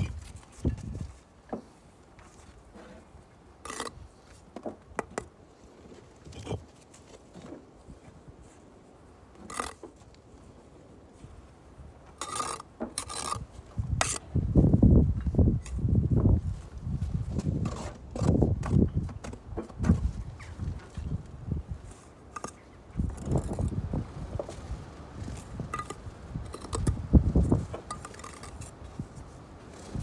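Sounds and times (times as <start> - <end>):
trowel scraping mortar and brick: 2.7 - 4.3, 9.4 - 10.0, 12.1 - 14.3, 17.4 - 18.8, 22.3 - 23.8, 25.2 - 29.0.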